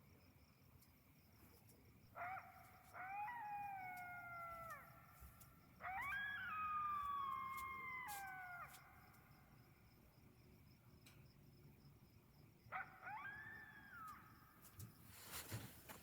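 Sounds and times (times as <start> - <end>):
crickets chirping: 0.0 - 16.0
animal howling: 2.2 - 5.0, 5.8 - 8.9.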